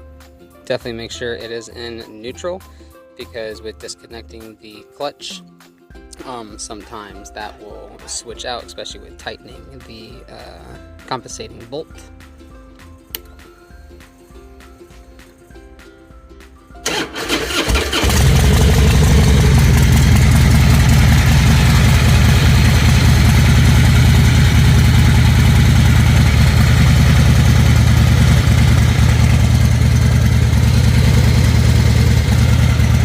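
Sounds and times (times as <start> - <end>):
motorcycle engine cranking and idling: 16.8 - 33.0.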